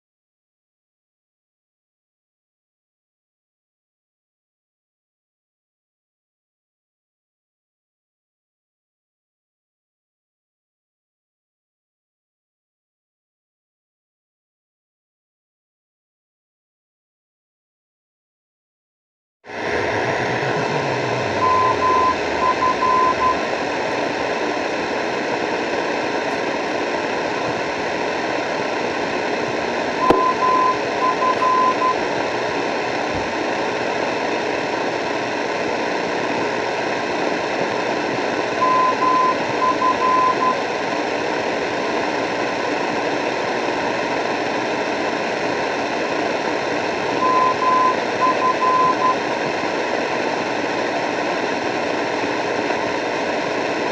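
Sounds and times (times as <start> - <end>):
radio static hiss: 19.5 - 35.2
steady-pitch beeps: 21.4 - 23.5, 30.0 - 32.0.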